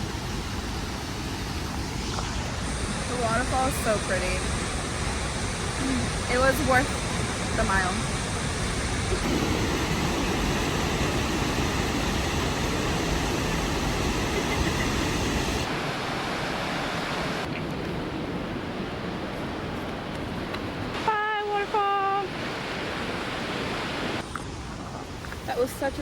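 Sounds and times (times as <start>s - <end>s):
waterfall rushing: 0.0s - 17.5s.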